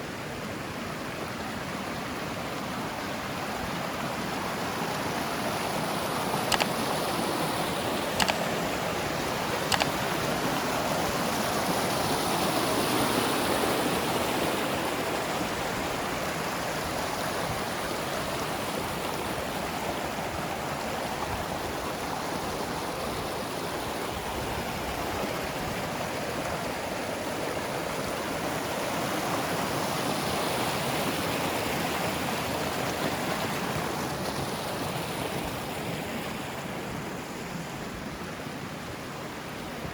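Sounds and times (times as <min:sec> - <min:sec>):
stream rushing over rocks: 0:00.0 - 0:39.9
sharp clicks: 0:06.5 - 0:06.8, 0:08.0 - 0:08.6, 0:09.6 - 0:10.0.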